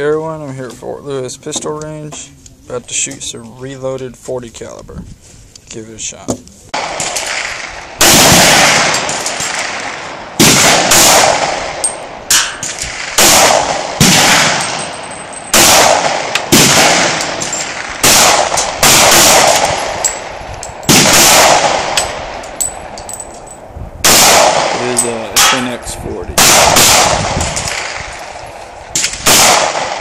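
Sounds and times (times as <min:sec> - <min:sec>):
pistol shots with echo: 0:06.8 - 0:22.9, 0:24.0 - 0:30.0.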